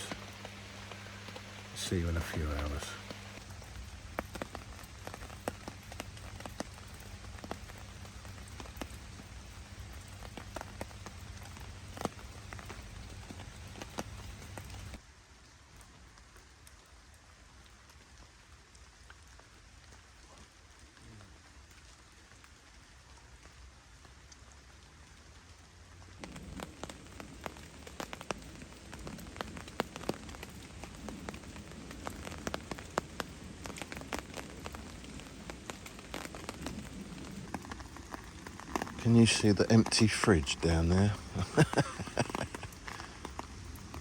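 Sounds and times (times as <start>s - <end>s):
rain falling on a tarp: 0.0s - 44.0s.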